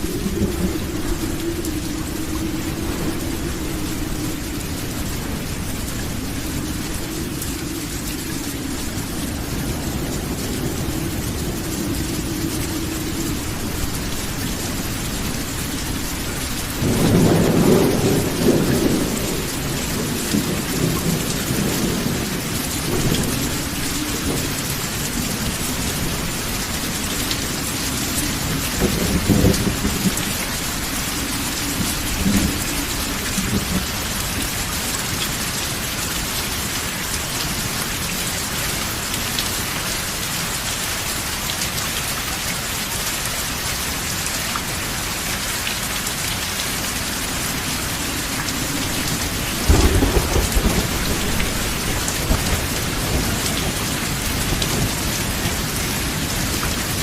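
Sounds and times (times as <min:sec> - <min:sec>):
low rolling thunder: 0:00.0 - 0:41.3, 0:46.0 - 0:57.0
steady rain: 0:00.0 - 0:57.0
loud thunderclap: 0:49.0 - 0:56.3.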